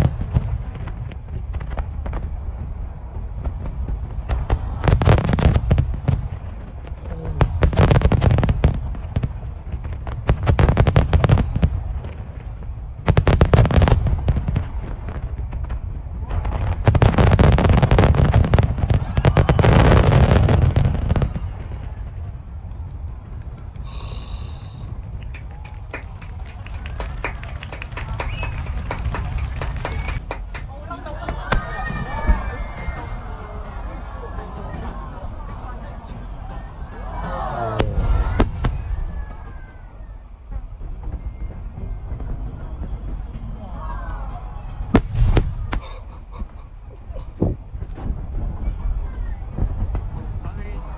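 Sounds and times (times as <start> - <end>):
fireworks booms: 0.0 - 50.9
fireworks crackling: 22.6 - 39.9.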